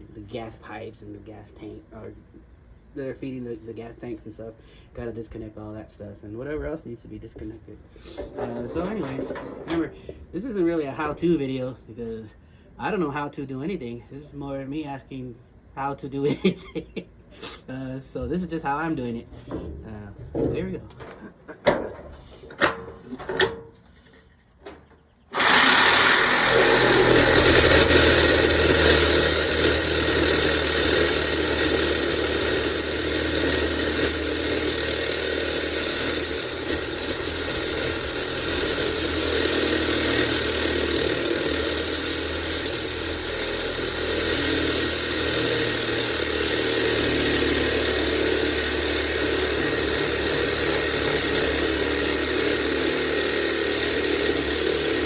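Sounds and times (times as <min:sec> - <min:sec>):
power tool cutting steel: 0:08.0 - 0:10.3, 0:18.5 - 0:23.7, 0:24.6 - 0:55.0.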